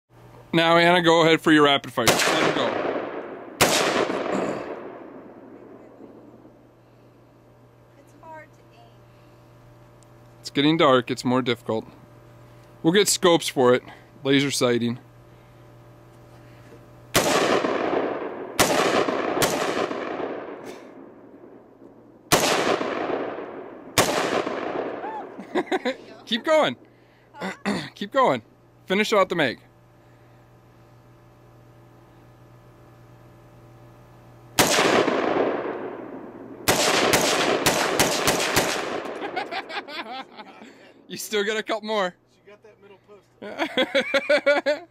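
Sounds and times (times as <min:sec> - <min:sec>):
rifle shots with rolling echo: 0:02.0 - 0:06.6, 0:17.1 - 0:25.2, 0:34.6 - 0:39.6.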